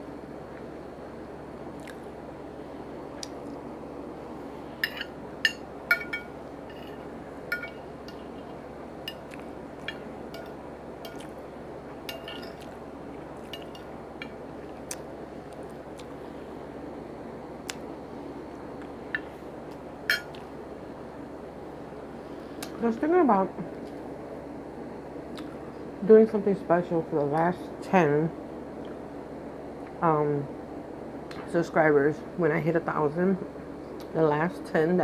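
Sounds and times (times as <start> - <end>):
low room hum: 0.0 - 35.0
utensil clinking against dishware: 4.8 - 8.3, 12.1 - 12.7.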